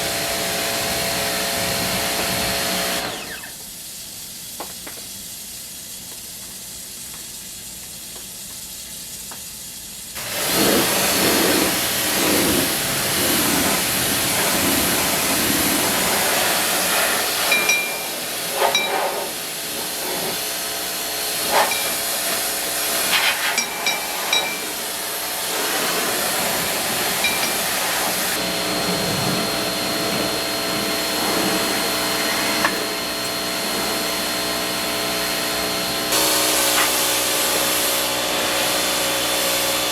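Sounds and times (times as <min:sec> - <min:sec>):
pressure washer spraying hiss: 0:00.0 - 0:39.9
steady whine: 0:10.7 - 0:20.4, 0:21.4 - 0:39.9.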